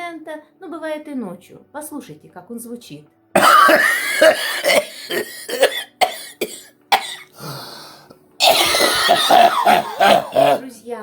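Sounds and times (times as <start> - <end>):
person coughing wetly: 3.4 - 7.7, 8.4 - 10.7
person drawing breath: 7.3 - 8.2.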